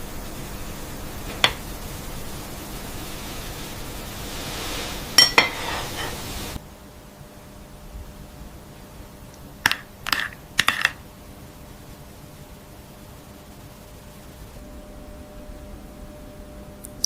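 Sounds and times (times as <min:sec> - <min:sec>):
steady hiss: 0:00.0 - 0:17.0
hard object clinking: 0:09.7 - 0:11.0.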